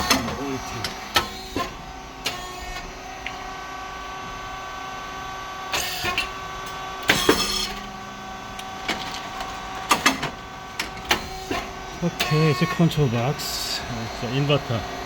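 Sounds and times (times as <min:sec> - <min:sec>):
machine motor and pump humming: 0:00.0 - 0:15.0.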